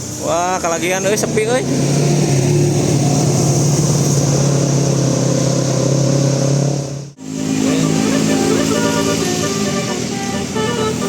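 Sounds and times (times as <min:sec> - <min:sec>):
bus engine droning: 0:00.0 - 0:11.0
multi-tone bus horn tune: 0:07.2 - 0:11.0.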